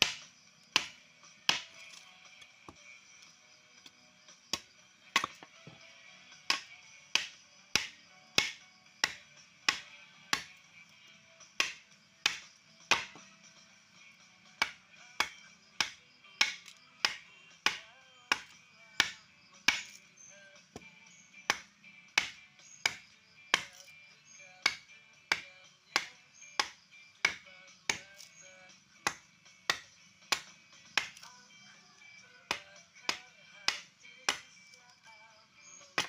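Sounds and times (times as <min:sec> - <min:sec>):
sharp ringing knocks on wood: 0:07.2 - 0:10.5.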